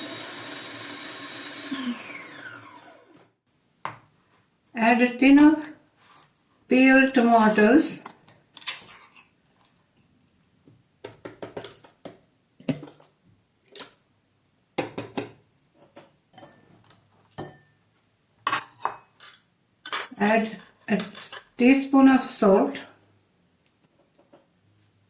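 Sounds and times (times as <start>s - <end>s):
scraping in a bowl: 8.6s - 9.3s, 18.5s - 21.5s.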